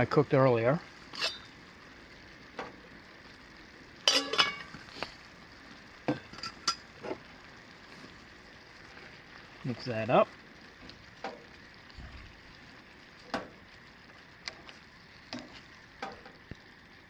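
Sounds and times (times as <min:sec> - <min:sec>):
faint steady sizzle: 0:00.0 - 0:17.0
metal cookware clinking and scraping: 0:01.1 - 0:01.5, 0:04.0 - 0:04.8, 0:06.1 - 0:06.9.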